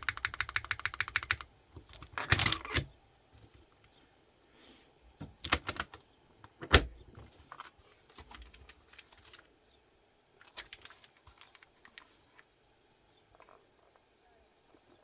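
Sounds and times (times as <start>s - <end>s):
mechanical keyboard keystroke clacks: 0.0s - 2.9s, 5.4s - 6.0s.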